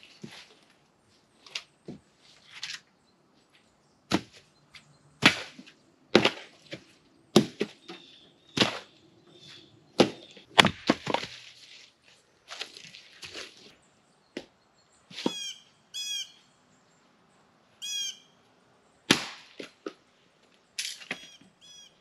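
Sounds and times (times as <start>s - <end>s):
firewood knocking and cracking: 10.0s - 11.4s.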